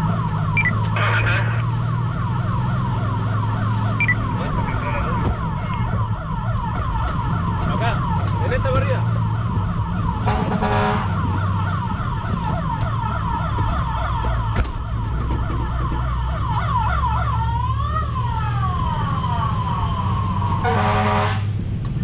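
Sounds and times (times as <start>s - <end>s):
fire engine siren: 0.0s - 21.8s
truck engine rumble: 0.0s - 22.0s
horn blast: 10.2s - 11.2s, 20.6s - 21.5s.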